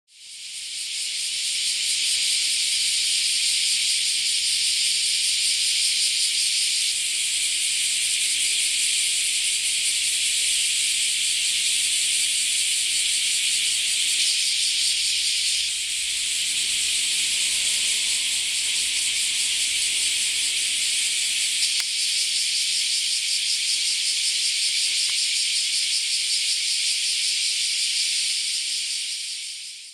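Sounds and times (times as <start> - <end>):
cicadas shrilling: 0.1 - 29.9.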